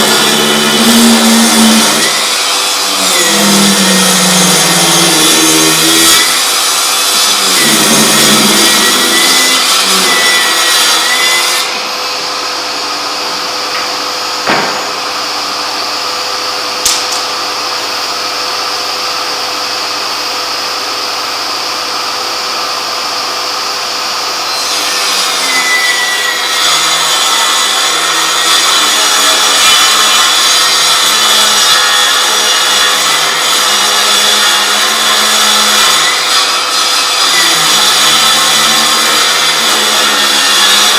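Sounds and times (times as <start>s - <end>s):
table saw cutting wood: 0.0s - 40.9s
sharp knocks: 13.7s - 15.3s.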